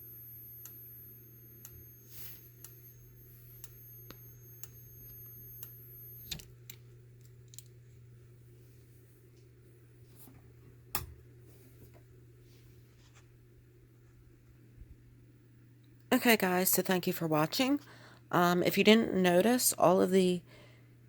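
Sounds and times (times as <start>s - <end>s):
thin high whine: 0.0s - 7.2s
fire alarm strobe ticking: 0.0s - 7.6s.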